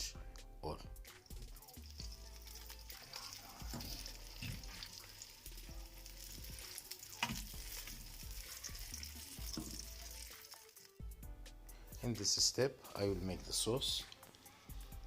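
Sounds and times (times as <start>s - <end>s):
food sizzling in oil: 1.2s - 11.1s.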